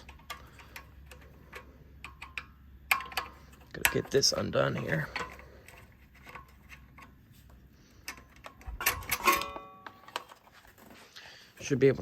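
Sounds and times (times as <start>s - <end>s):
hand tools clicking on metal: 0.0s - 7.1s.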